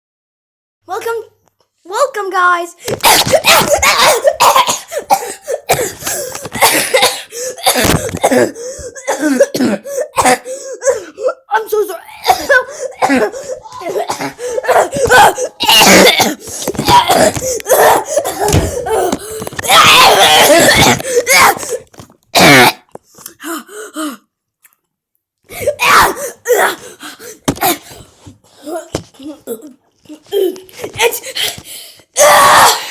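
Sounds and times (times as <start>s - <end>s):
person coughing harshly: 2.8s - 11.5s, 12.1s - 22.9s.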